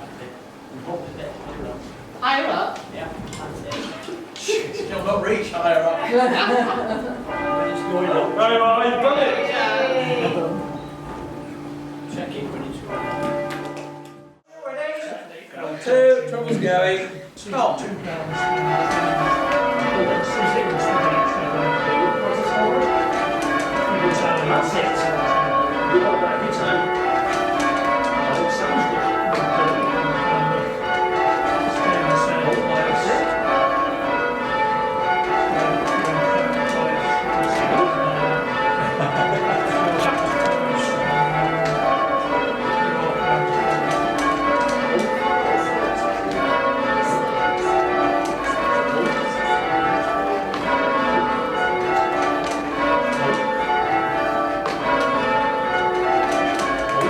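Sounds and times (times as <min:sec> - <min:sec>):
church bells change ringing: 0:05.1 - 0:14.5, 0:18.0 - 0:57.0.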